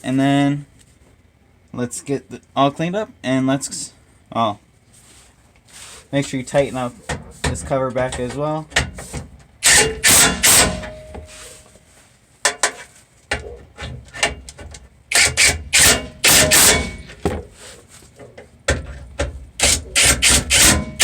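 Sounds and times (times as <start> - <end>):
tools knocking and clanking: 7.0 - 11.3, 12.4 - 17.5, 18.2 - 21.0.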